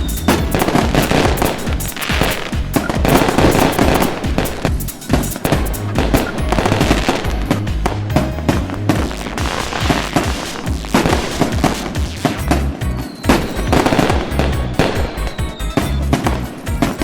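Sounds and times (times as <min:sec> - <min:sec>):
faint falling whistle: 0:00.0 - 0:01.2, 0:13.0 - 0:16.5
fireworks banging and crackling: 0:00.0 - 0:17.0
music: 0:00.0 - 0:17.0.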